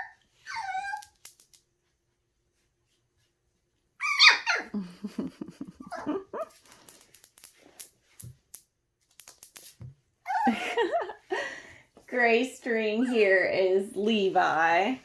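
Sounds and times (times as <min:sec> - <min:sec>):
puppies yipping and whining: 0:00.0 - 0:01.1, 0:04.0 - 0:04.8, 0:05.8 - 0:06.6.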